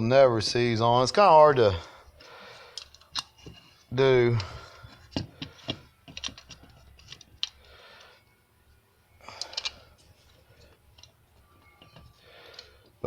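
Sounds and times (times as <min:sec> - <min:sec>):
small parts clicking and rustling: 0:02.1 - 0:08.2, 0:09.2 - 0:13.0.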